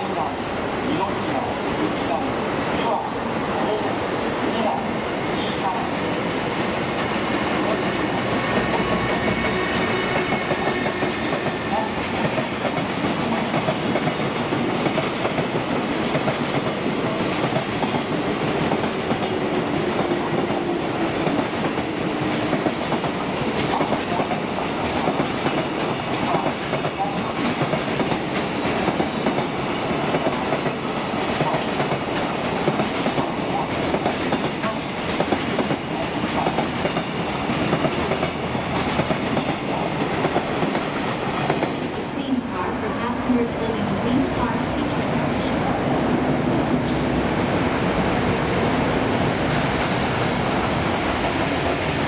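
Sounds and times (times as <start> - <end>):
freight train wheels clattering: 7.3 - 42.0.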